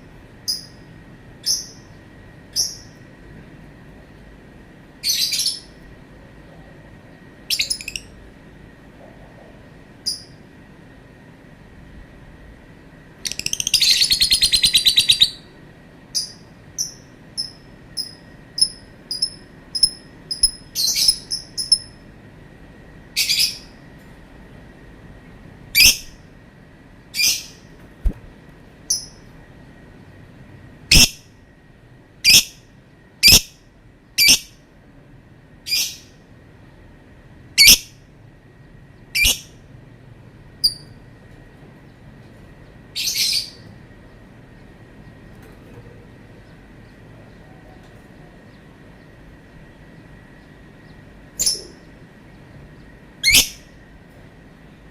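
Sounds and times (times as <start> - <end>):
bird rapid trill: 13.3 - 15.5, 16.1 - 22.0, 39.2 - 39.5, 53.2 - 53.7
bird shrill calls: 53.2 - 53.6.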